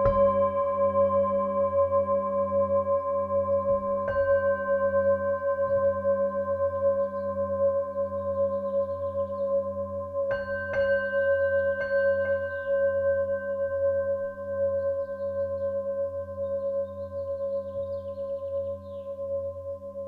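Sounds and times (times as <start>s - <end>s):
bell-like strikes: 0.0s - 1.4s
low pulsing drone: 0.0s - 20.0s
singing bowl tones: 0.0s - 20.0s.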